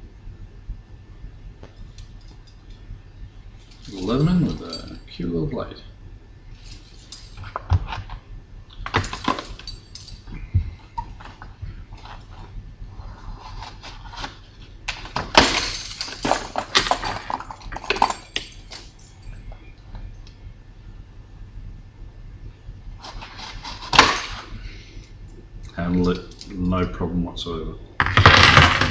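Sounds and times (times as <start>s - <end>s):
plastic packaging crackling: 13.3s - 18.9s.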